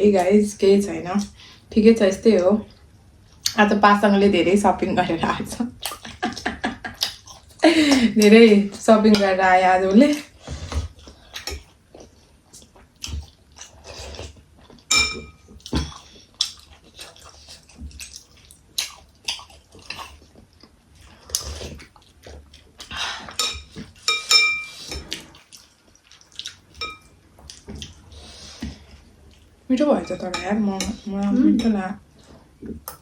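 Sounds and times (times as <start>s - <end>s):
cutlery clinking on plates: 14.9s - 15.9s, 23.4s - 25.1s, 26.8s - 27.2s.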